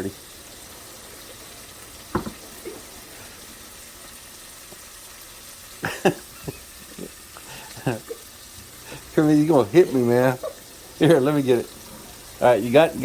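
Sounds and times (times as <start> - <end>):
meat and onions sizzling in a pan: 0.0 - 13.0.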